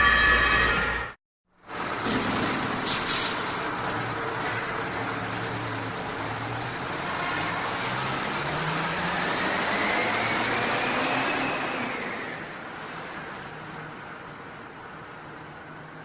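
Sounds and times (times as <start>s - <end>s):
vehicle engine accelerating: 1.7s - 14.1s.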